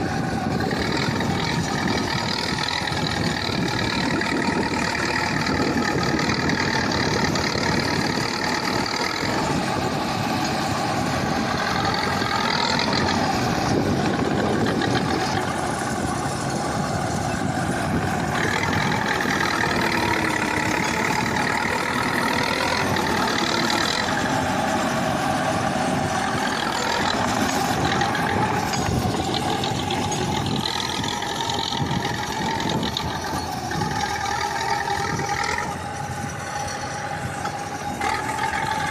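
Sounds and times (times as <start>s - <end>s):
bulldozer diesel engine running: 0.0s - 38.9s.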